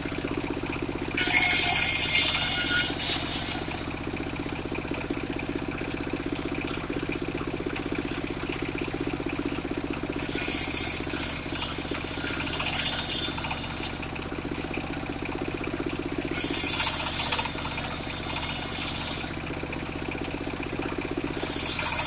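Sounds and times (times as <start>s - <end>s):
sawmill engine running: 0.0s - 22.0s
short high hissing bursts: 1.2s - 3.9s, 10.2s - 14.8s, 16.4s - 19.4s, 21.4s - 22.0s.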